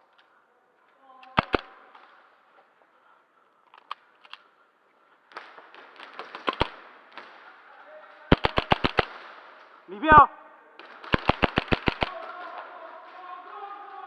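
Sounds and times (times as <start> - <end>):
faint distant shots: 1.3 - 14.0
airsoft gun shots: 1.4 - 1.9, 5.3 - 7.6, 8.3 - 12.5.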